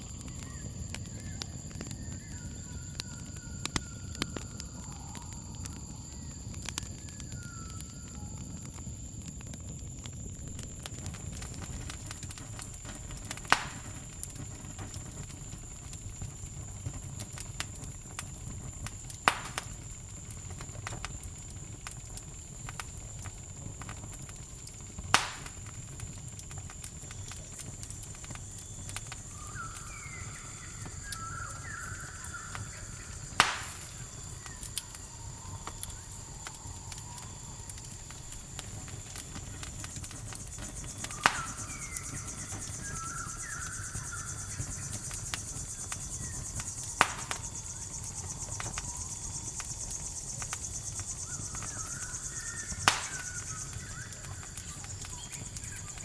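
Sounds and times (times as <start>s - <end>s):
campfire crackling and popping: 0.0s - 56.0s
crickets trilling: 0.0s - 56.0s
short chirping calls: 29.1s - 36.4s, 40.6s - 49.3s, 50.2s - 56.0s.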